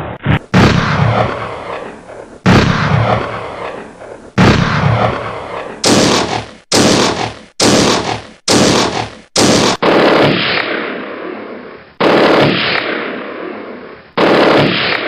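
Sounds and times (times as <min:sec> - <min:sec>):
loud sudden bangs: 0:00.2 - 0:10.8.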